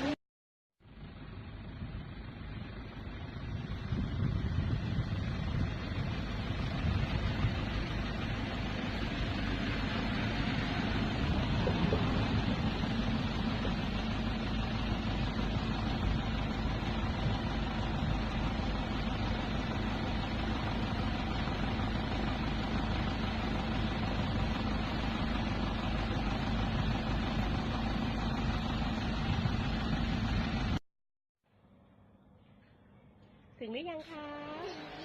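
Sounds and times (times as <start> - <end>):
vehicle engine running: 0.8 - 30.8, 31.5 - 35.0
even rushing noise: 3.6 - 15.6.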